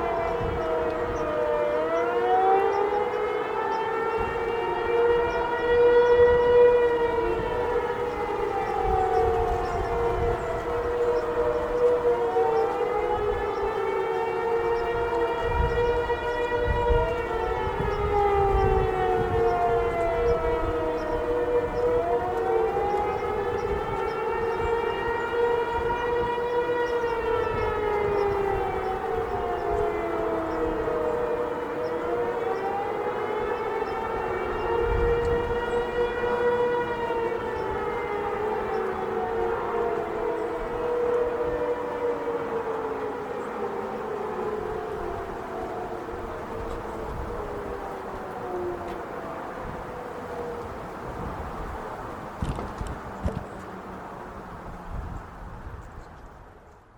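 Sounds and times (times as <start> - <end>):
steady siren tone: 0.0 - 56.9
wailing tornado sirens: 0.0 - 56.9.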